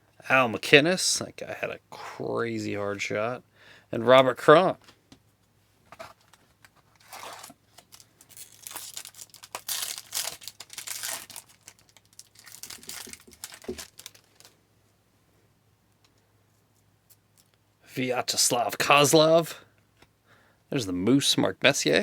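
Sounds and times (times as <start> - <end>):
cards and plastic film crinkling: 6.0 - 14.6.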